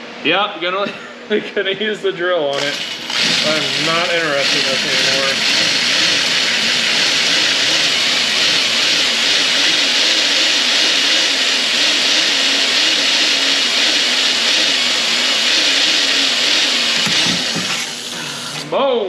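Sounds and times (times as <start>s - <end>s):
electric drill boring through bolt: 2.5s - 18.7s.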